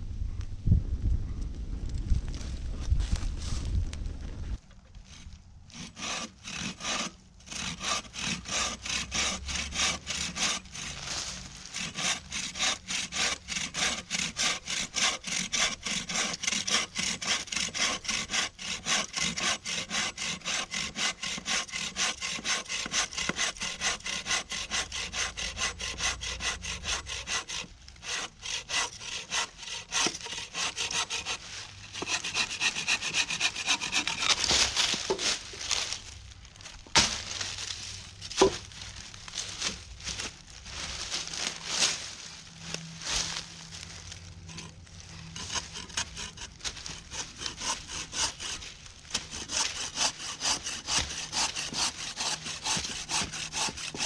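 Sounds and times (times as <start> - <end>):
hand saw cutting wood: 5.1 - 35.9, 38.3 - 38.6, 44.5 - 54.0.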